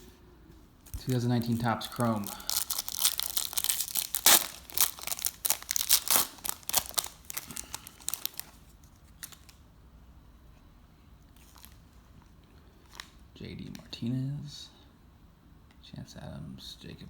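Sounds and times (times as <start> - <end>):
foil wrapper tearing and crinkling: 0.8 - 9.6.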